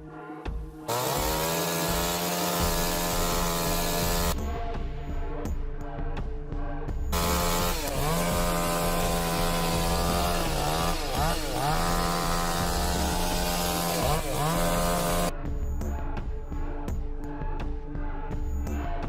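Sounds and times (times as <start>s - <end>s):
chainsaw running: 0.9s - 4.4s, 7.1s - 15.3s.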